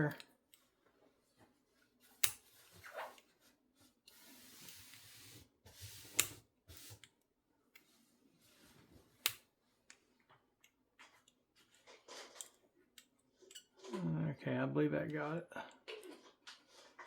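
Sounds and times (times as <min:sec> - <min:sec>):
metallic clicks of lock picking: 0:02.2 - 0:02.4
scraping rub: 0:04.0 - 0:07.1.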